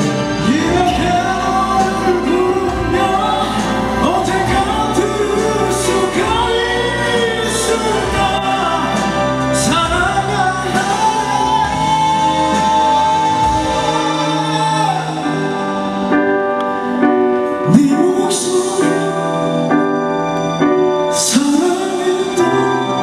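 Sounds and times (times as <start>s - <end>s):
male vocal group singing: 0.0s - 16.1s, 17.6s - 19.6s, 21.2s - 23.0s
instrumental accompaniment: 0.0s - 23.0s.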